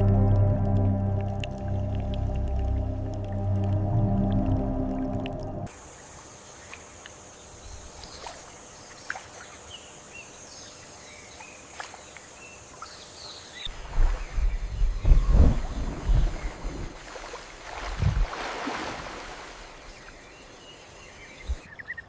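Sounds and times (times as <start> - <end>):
loud low rumble: 0.0 - 5.7.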